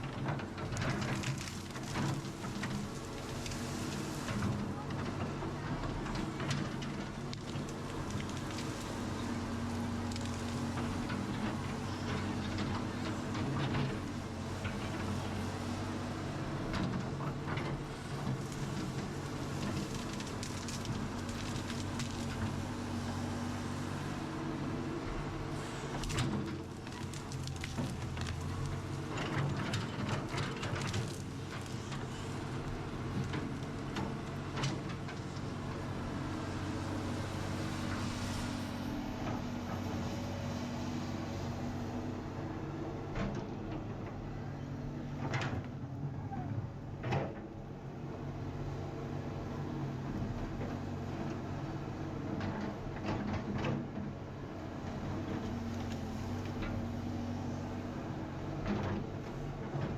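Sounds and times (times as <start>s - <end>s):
excavator engine running: 0.0s - 59.9s
knocks and scrapes of digging: 25.5s - 35.4s.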